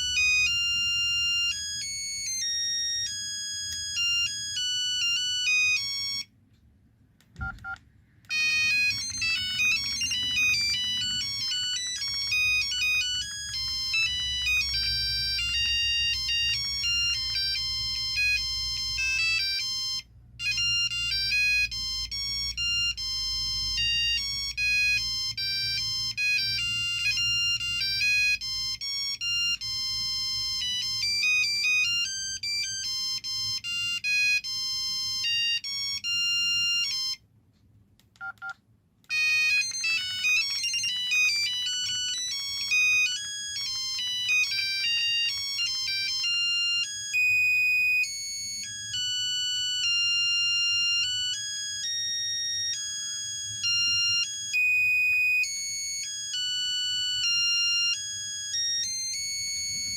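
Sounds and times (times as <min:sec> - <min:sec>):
electronic ringtone melodies: 0:00.0 - 0:06.3, 0:07.4 - 0:37.2, 0:39.1 - 0:59.9.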